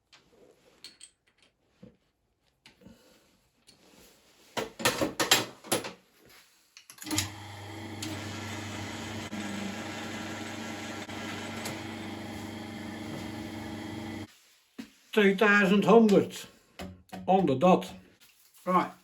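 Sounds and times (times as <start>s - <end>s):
lathe running with steady hum: 7.0s - 14.3s.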